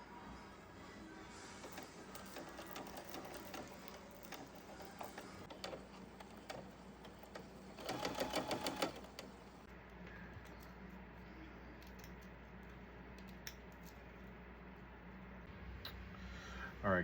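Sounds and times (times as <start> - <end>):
sewing machine stitching: 1.6 - 9.5.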